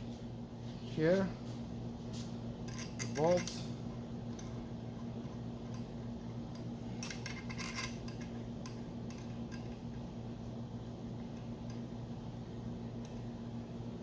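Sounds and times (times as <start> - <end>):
low electrical hum: 0.0 - 14.0
metallic clinks of bolts and tools: 2.7 - 3.7, 6.9 - 9.8.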